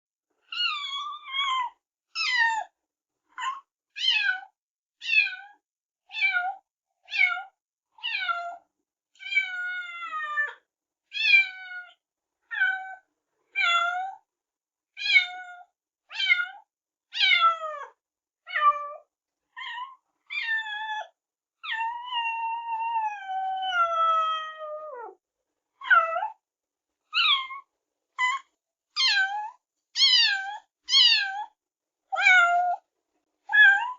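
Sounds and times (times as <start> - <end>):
cat meowing: 19.6 - 21.0, 21.6 - 25.2, 27.1 - 31.6, 32.2 - 32.8, 33.5 - 33.9.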